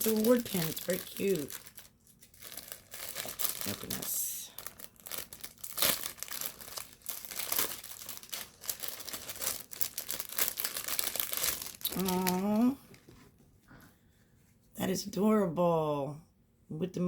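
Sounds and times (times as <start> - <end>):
packaging tearing: 0.0 - 12.4
packaging crackling and rustling: 0.0 - 13.2.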